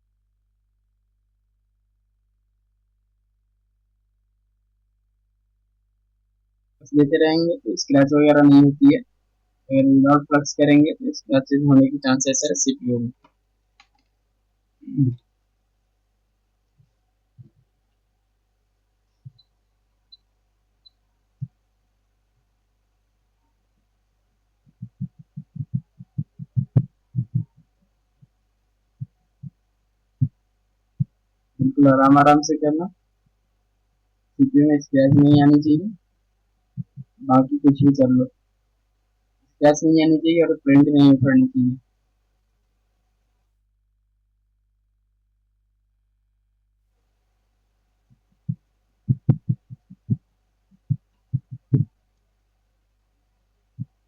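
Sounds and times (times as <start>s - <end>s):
soft low knocks: 24.7s - 28.4s, 48.1s - 50.2s, 50.8s - 51.9s.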